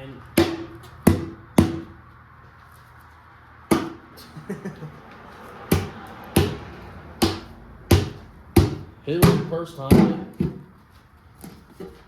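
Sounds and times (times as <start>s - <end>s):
sharp knocks on metal: 0.4s - 2.0s, 3.7s - 4.0s, 5.7s - 10.6s.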